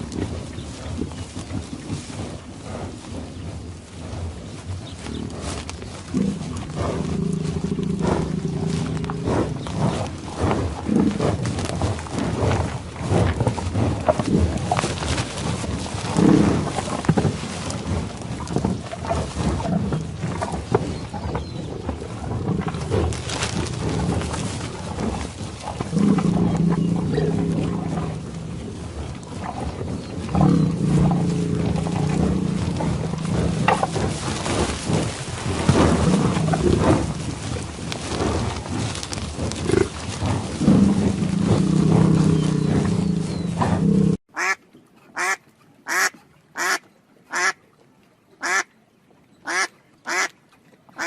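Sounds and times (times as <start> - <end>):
cattle mooing: 25.9 - 28.6, 30.4 - 34.5, 40.6 - 44.5
cow mooing: 30.4 - 34.2.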